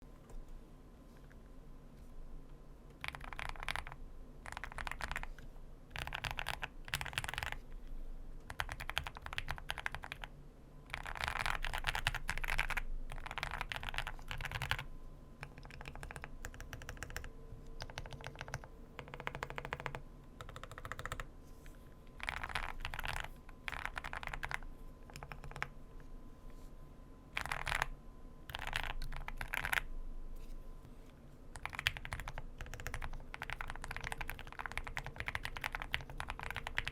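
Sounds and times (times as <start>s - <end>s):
mechanical keyboard typing: 3.0s - 7.6s, 8.4s - 10.3s, 10.9s - 21.3s, 22.2s - 25.7s, 27.3s - 29.9s, 31.5s - 36.9s.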